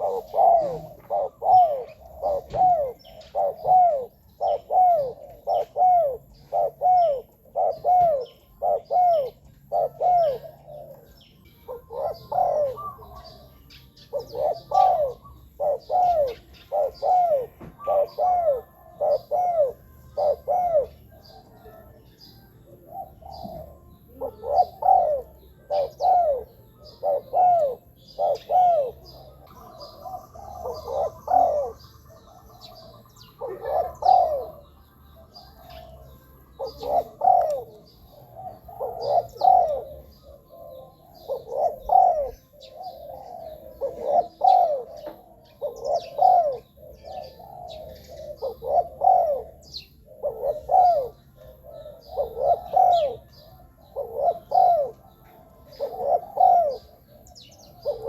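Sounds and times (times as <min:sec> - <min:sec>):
dove cooing: 0:00.0 - 0:58.0
small birds chirping: 0:00.0 - 0:58.0.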